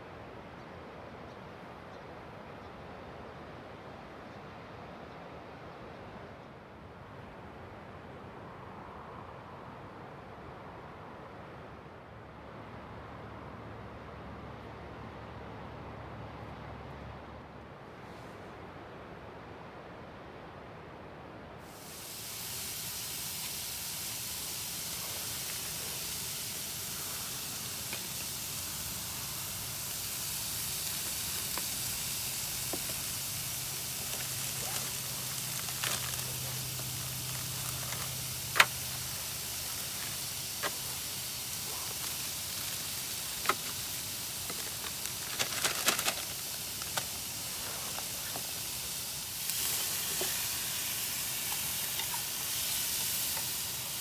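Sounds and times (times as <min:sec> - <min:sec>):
food sizzling in a pan: 0:21.7 - 0:54.0
sharp pops and crackles: 0:21.8 - 0:54.0.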